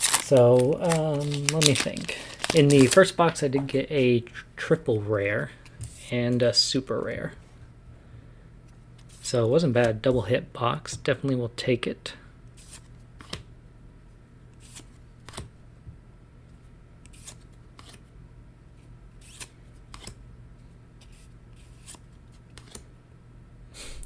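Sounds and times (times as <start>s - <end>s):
cards clicking and rustling: 0.0s - 3.7s, 14.6s - 15.5s, 17.1s - 18.0s, 19.2s - 20.2s, 21.0s - 22.9s
low steady hum: 0.0s - 24.0s.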